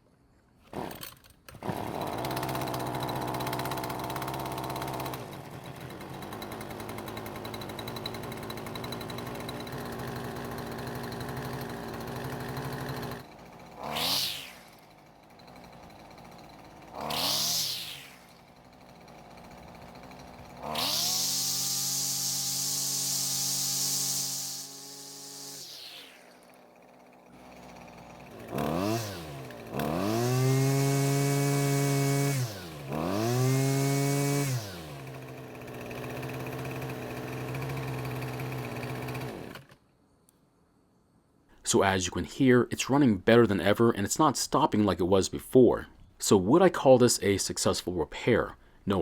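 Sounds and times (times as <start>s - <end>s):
string trimmer engine running: 0.7s - 39.8s
starter cord pulls: 39.2s - 39.8s.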